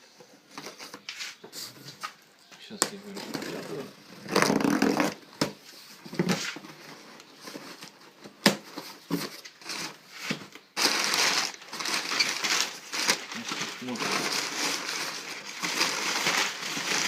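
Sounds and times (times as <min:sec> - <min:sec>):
packaging rustling and tearing: 0:02.9 - 0:05.4, 0:06.0 - 0:17.0.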